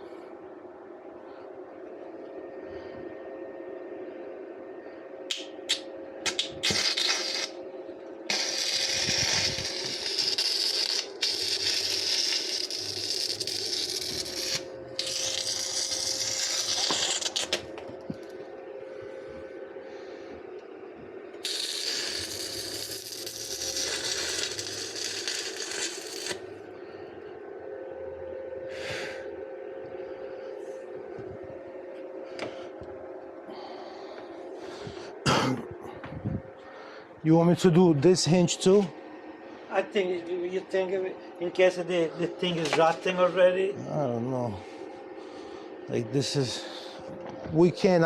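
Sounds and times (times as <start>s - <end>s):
steady hum: 0.0s - 48.0s
welding arc crackling: 5.3s - 7.6s, 8.3s - 18.2s, 21.4s - 26.6s.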